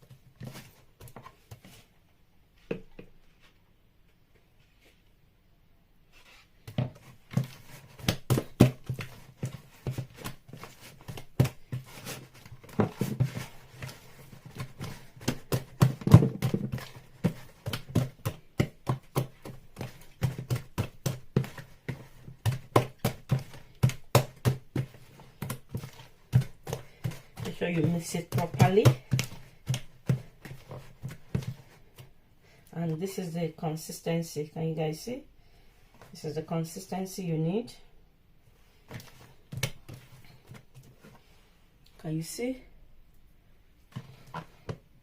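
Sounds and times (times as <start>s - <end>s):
batter beaten in a bowl: 6.7s - 32.1s, 38.9s - 40.9s.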